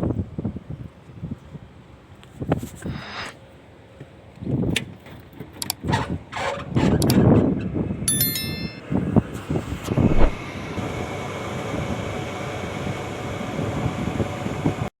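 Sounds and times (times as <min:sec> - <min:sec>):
blower running with faint whine: 0:08.8 - 0:14.9.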